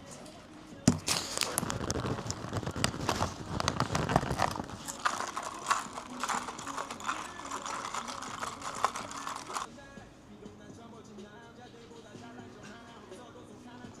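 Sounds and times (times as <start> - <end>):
plastic rustling: 0.9 - 9.7.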